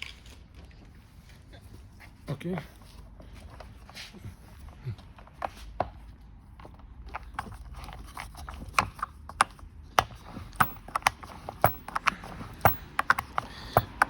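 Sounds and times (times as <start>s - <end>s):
hand tools clicking and tapping: 6.6s - 14.0s
hard plastic parts handled: 6.6s - 14.0s.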